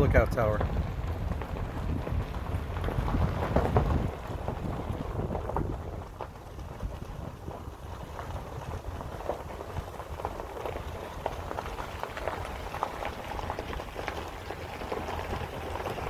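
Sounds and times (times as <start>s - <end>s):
wind on microphone: 0.0s - 10.2s
small crackles and pops: 0.0s - 16.0s
tyres rumbling on road: 0.0s - 16.0s.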